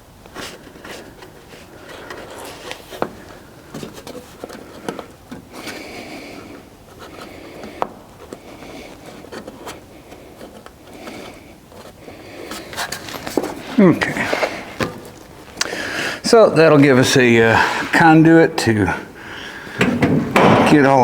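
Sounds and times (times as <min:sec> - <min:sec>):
scraping and rubbing on car door: 0:00.3 - 0:15.5.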